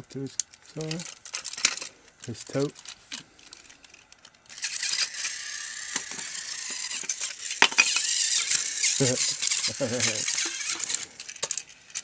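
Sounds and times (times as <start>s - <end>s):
small plastic clicks: 0.1s - 12.0s
toy train motor whirring: 0.3s - 12.0s.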